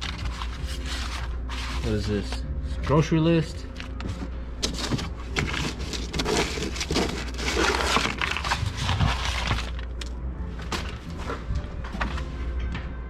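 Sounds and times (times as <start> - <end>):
paper and items rustling: 0.0 - 12.6.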